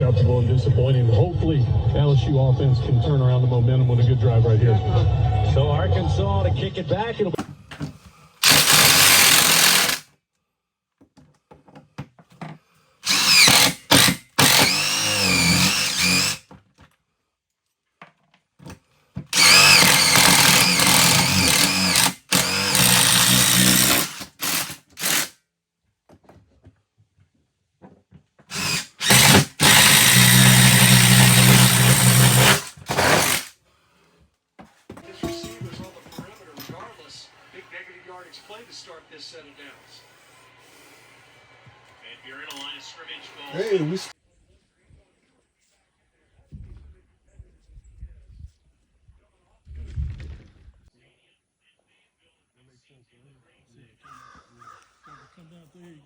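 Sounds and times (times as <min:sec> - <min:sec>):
power drill whining: 0:08.4 - 0:10.0, 0:13.0 - 0:16.5, 0:19.3 - 0:25.3, 0:28.5 - 0:33.5, 0:43.6 - 0:44.1.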